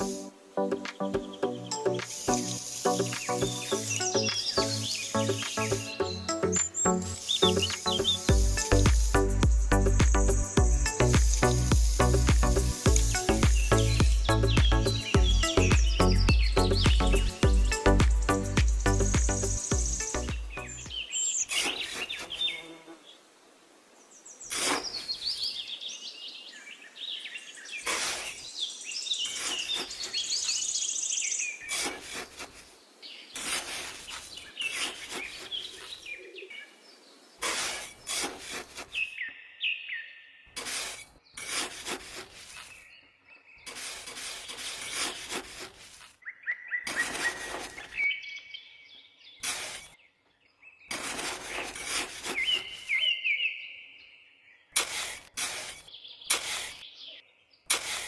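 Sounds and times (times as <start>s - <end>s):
birds chirping: 0.0s - 22.6s.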